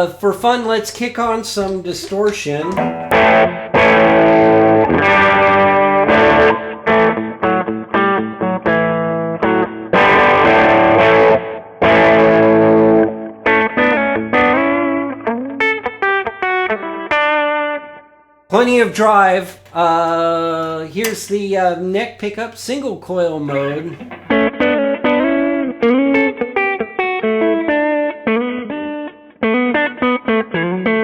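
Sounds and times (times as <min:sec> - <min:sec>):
guitar single notes with vibrato: 0:02.6 - 0:15.5
distorted electric guitar chords: 0:02.6 - 0:17.8.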